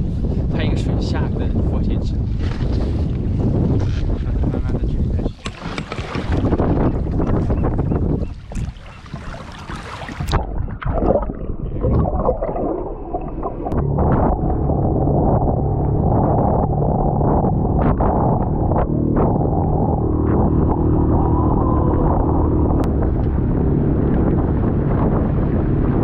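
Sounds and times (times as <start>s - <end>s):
outboard motor running: 5.4s - 10.9s, 13.7s - 26.0s
water sloshing: 5.4s - 22.9s.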